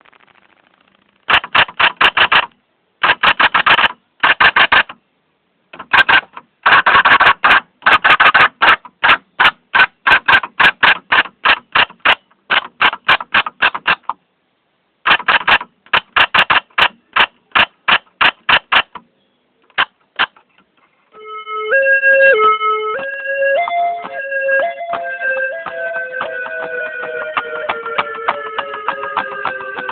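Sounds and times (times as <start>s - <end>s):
electronic tone melody: 21.1s - 29.9s
typewriter keys clacking: 24.9s - 29.9s.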